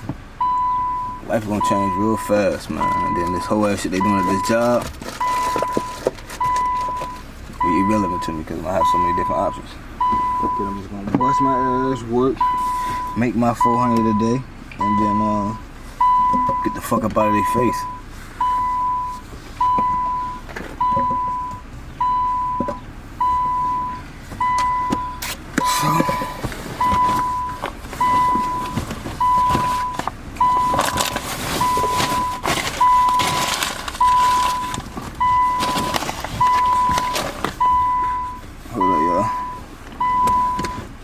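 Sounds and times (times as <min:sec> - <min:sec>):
car warning chime beeping: 0:00.4 - 0:41.0
rustling handling noise: 0:01.4 - 0:14.8, 0:24.0 - 0:41.0.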